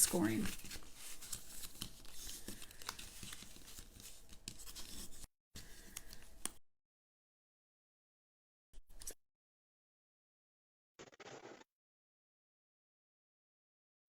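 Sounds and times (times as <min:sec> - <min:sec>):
cardstock scraping and crinkling: 0:00.0 - 0:06.2.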